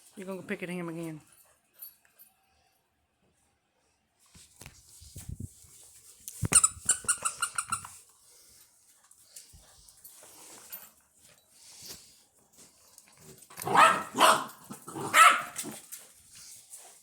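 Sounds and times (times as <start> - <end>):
puppy high-pitched yelps: 13.7 - 15.6.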